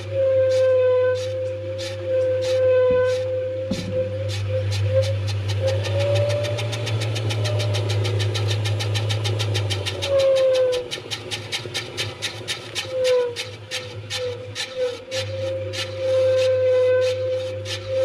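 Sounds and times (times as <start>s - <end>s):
washing machine motor hum: 0.0s - 18.0s
rapid even ticking: 4.6s - 15.3s.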